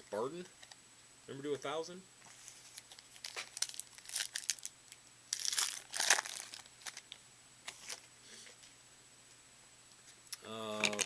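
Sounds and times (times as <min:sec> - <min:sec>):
foil wrapper crinkling: 0:02.5 - 0:04.7, 0:05.3 - 0:08.0.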